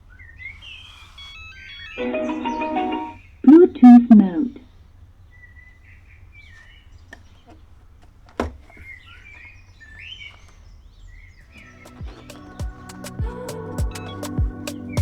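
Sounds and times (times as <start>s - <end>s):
birds chirping: 0.0s - 15.0s
music with thumping beat: 11.9s - 15.0s.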